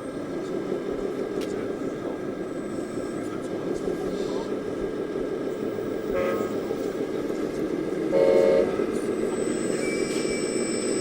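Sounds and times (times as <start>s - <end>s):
steady background noise: 0.0s - 11.0s
model vehicle horn toots: 6.1s - 6.6s, 8.1s - 8.8s.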